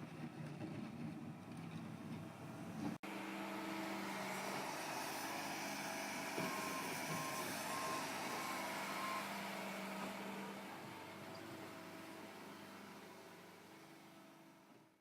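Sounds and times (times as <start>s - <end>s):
reversing alarm beeps: 6.4s - 9.5s.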